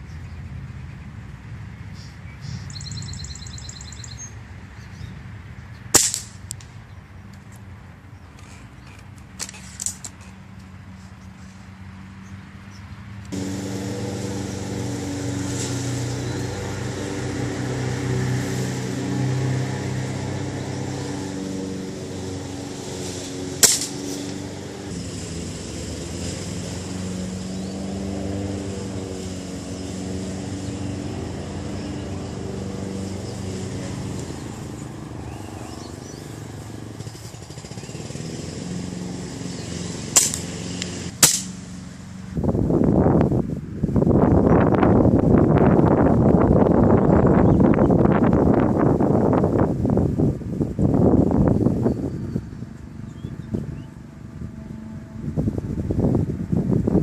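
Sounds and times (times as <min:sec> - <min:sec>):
rifle shots cracking: 0:06.0 - 0:06.4, 0:23.6 - 0:24.1, 0:40.2 - 0:40.5, 0:41.2 - 0:41.6
engine running: 0:13.1 - 0:43.8, 0:44.7 - 0:57.0.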